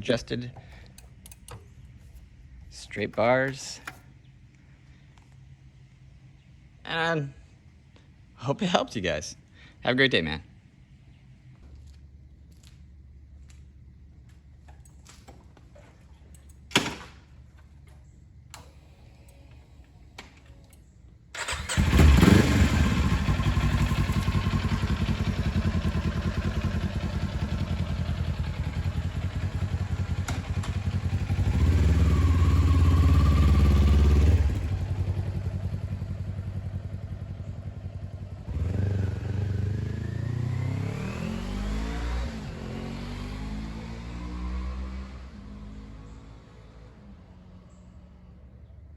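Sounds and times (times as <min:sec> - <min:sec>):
motorcycle engine running: 0:21.4 - 0:41.8.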